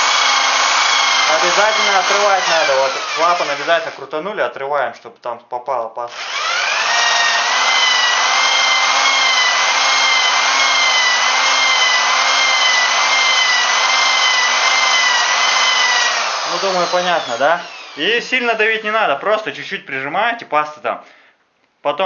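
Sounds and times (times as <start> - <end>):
electric drill whining: 0.0 - 4.0, 6.1 - 19.0.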